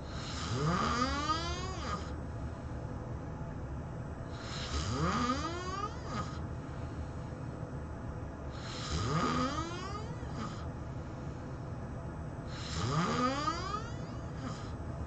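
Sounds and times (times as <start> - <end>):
person snoring loudly: 0.1 - 2.1, 4.4 - 6.4, 8.6 - 10.7, 12.6 - 14.8.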